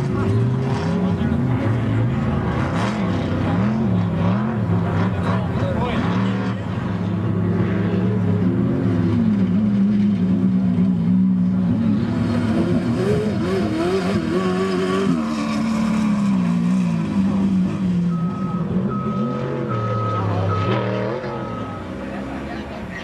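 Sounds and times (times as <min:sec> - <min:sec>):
race vehicle engine revving: 0:00.0 - 0:23.0
short repeating beep: 0:18.2 - 0:22.0.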